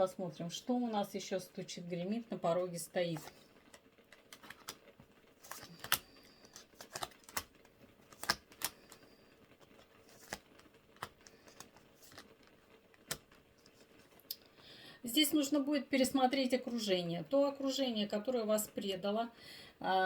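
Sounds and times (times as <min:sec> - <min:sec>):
cards clicking and tapping on table: 0:08.1 - 0:08.8.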